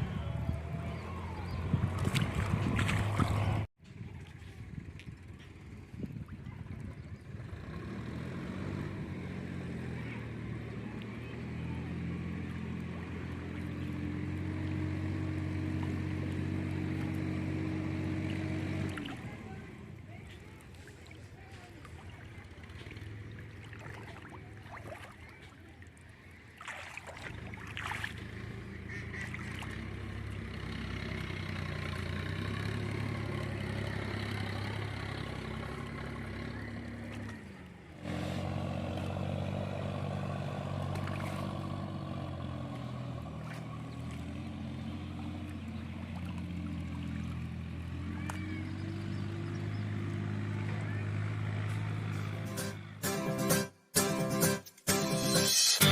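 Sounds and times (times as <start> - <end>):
small engine running: 27.3 - 53.1.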